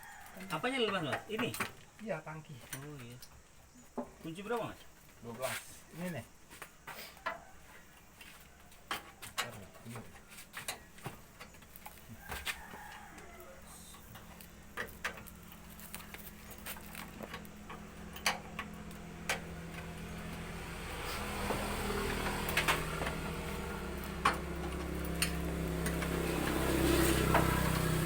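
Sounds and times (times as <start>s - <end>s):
low engine hum: 13.8s - 28.0s.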